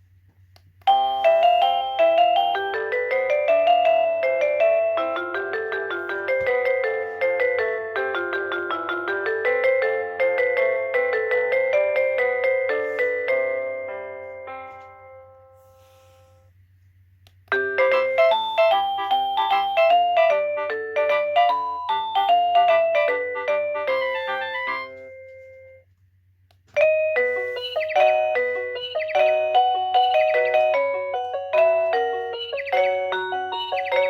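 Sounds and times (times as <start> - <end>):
doorbell bell-like chime tunes: 0.9 - 15.7, 17.5 - 25.8, 26.8 - 34.0.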